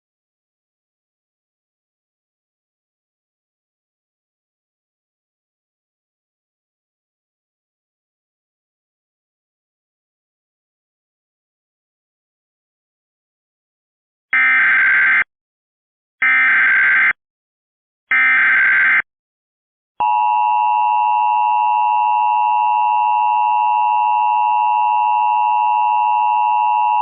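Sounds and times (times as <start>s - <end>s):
two-tone alert signal: 20.0s - 27.0s.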